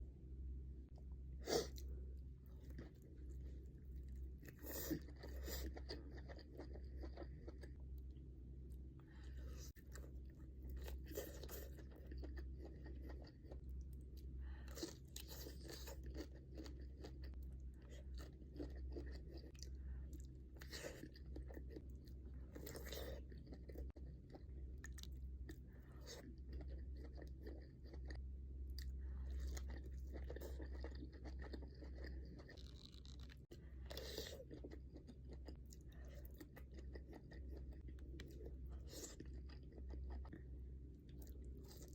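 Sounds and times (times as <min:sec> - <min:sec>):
steady low hum: 0:00.0 - 0:41.9
person chewing and crunching: 0:01.4 - 0:08.1, 0:09.2 - 0:41.9.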